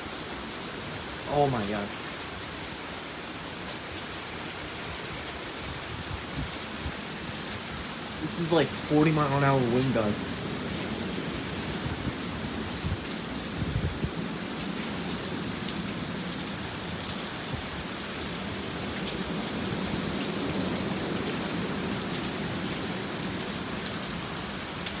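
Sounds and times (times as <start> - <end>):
heavy rain pouring: 0.0 - 25.0
wind gust buffeting microphone: 8.3 - 14.5.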